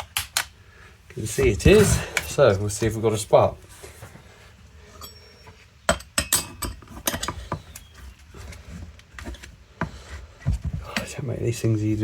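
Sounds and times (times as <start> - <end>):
chainsaw parts handled on workbench: 1.3 - 3.0
hand tools clinking: 4.9 - 8.0.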